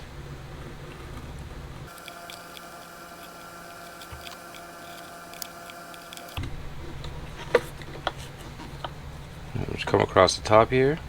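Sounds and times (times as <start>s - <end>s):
sharp clicks: 1.9s - 6.5s.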